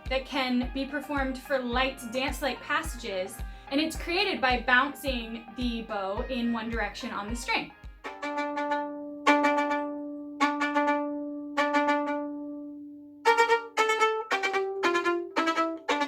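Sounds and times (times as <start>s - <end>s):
violin ricochet bowing: 8.0s - 16.0s.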